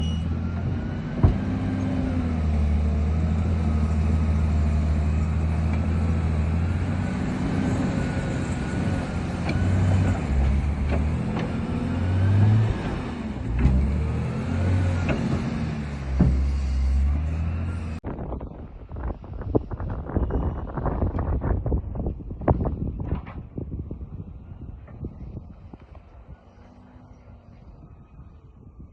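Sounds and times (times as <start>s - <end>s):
heavy diesel machinery engine: 0.0s - 18.0s.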